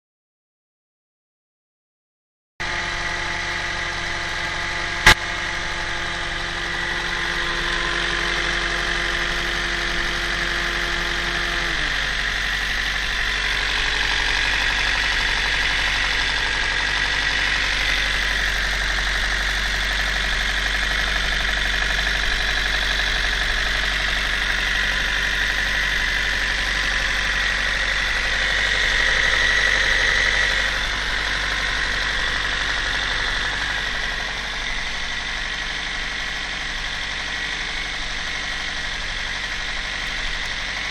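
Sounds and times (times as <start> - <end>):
car engine idling with knock: 2.6 - 40.9.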